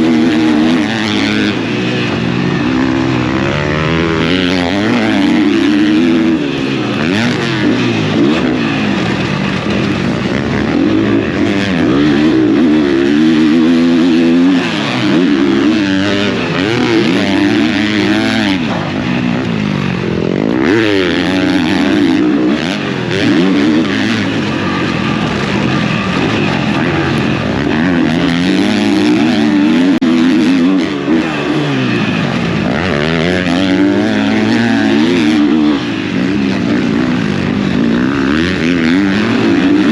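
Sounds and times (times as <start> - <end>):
motocross bike engine revving: 0.0 - 39.9.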